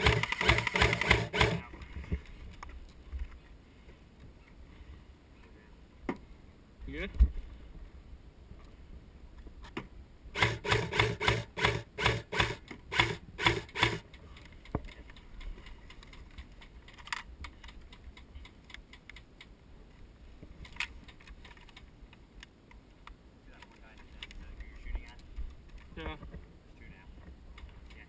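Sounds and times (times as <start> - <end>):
gear clicking and rustling: 10.4 - 26.2.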